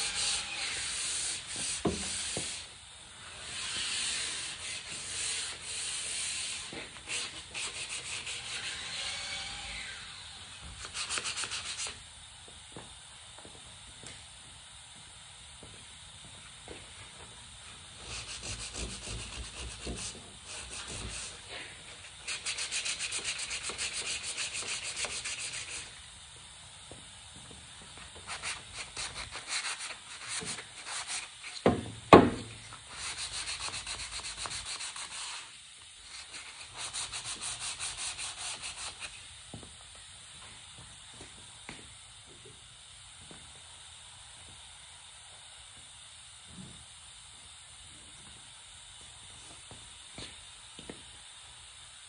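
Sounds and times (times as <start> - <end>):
sanding wood: 0.0 - 2.7, 3.3 - 9.1, 10.8 - 12.0, 18.0 - 26.0, 28.2 - 31.6, 32.9 - 39.2.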